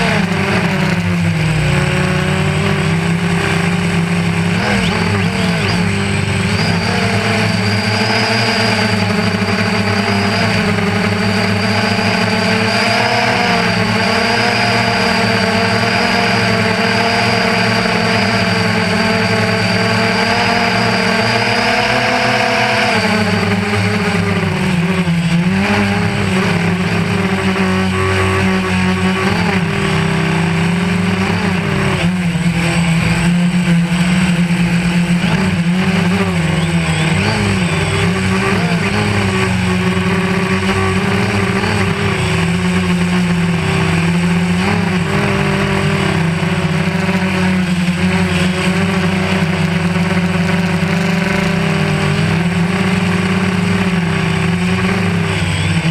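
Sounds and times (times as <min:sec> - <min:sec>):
drone propellers humming: 0:00.0 - 0:55.9.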